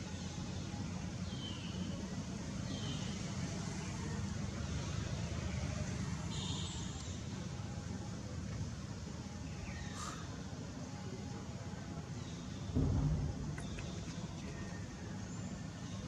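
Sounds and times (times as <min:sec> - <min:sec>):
low outdoor rumble: 0:07.0 - 0:16.0.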